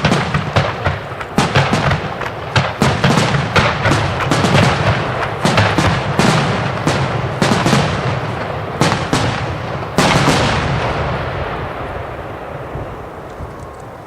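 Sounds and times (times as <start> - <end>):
fireworks shell bursts banging: 0.0 - 9.3.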